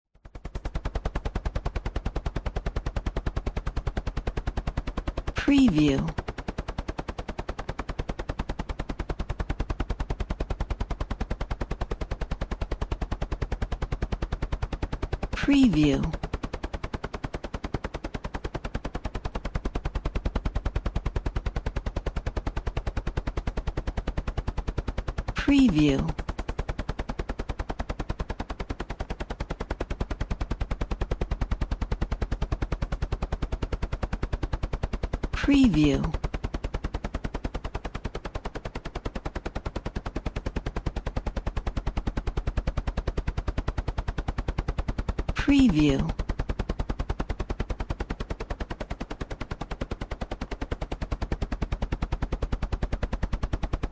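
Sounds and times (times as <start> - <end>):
helicopter rotor blades chopping: 0.2 - 53.9.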